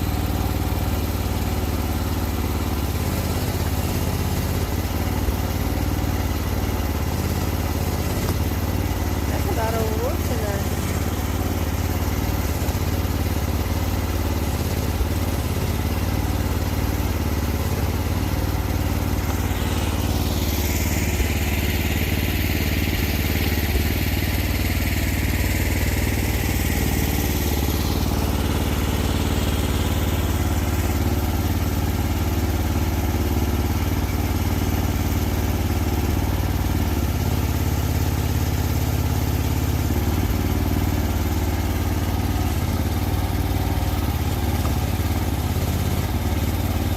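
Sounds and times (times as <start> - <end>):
small diesel engine running: 0.0 - 46.9.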